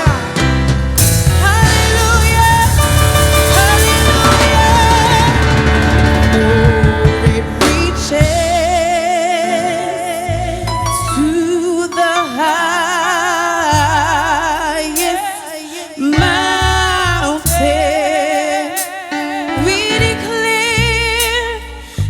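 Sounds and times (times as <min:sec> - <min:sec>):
band with pulsing bass line: 0:00.0 - 0:09.0
person singing with vibrato: 0:00.0 - 0:22.0.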